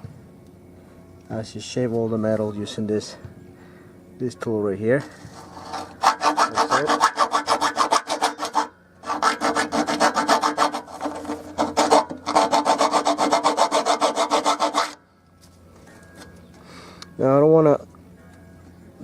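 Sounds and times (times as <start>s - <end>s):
hand file rasping metal: 5.3s - 15.0s.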